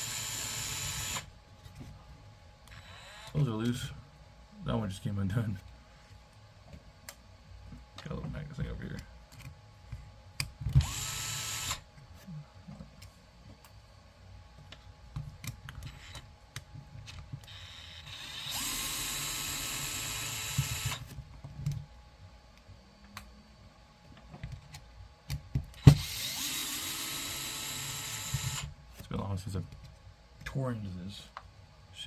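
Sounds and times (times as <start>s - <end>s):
electric screwdriver motor whine: 0.0s - 1.3s, 2.7s - 3.4s, 10.8s - 11.8s, 17.4s - 21.0s, 25.8s - 28.7s.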